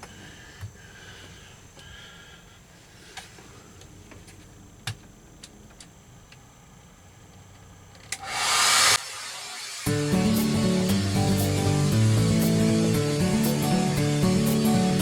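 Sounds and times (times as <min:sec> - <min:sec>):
faint steady hum: 0:00.0 - 0:09.0.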